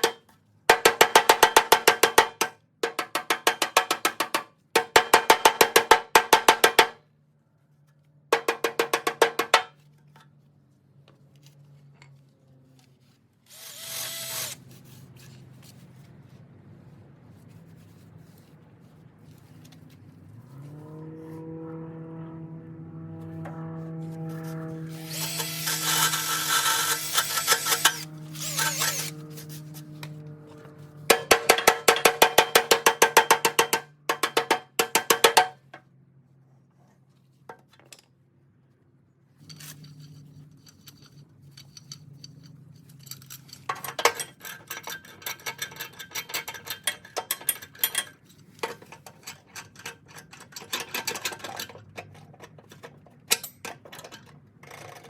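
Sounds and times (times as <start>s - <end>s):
rapid hammering clicks: 0.0s - 7.0s, 8.4s - 9.7s, 31.1s - 35.6s
power tool running: 13.5s - 14.6s, 24.0s - 30.2s
metal tools clinking: 39.4s - 55.0s.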